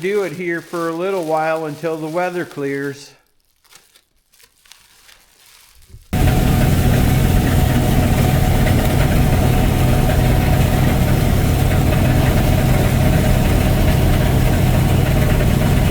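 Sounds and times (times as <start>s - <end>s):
engine idling: 6.2s - 15.9s.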